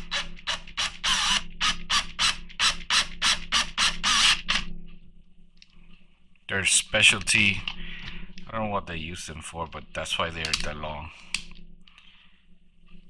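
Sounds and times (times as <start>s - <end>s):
drill bit grinding metal: 0.0s - 4.5s.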